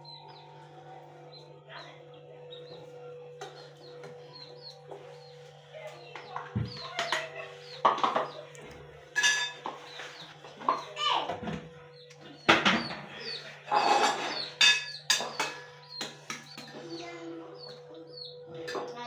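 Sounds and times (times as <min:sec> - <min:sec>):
birds chirping: 0:00.0 - 0:19.0
plates and pots clinking: 0:06.2 - 0:17.0, 0:18.5 - 0:19.0.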